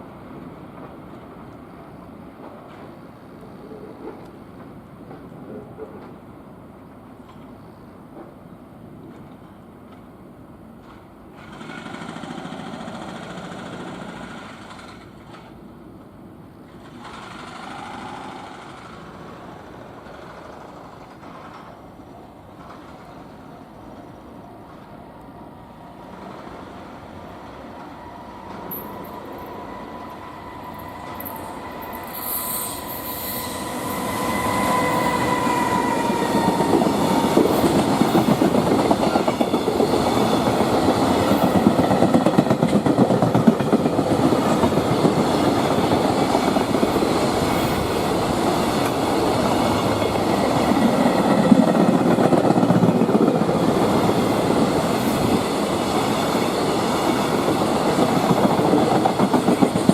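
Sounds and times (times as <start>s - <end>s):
train whine: 10.6s - 59.9s
train wheels clattering over rail joints: 10.8s - 15.6s.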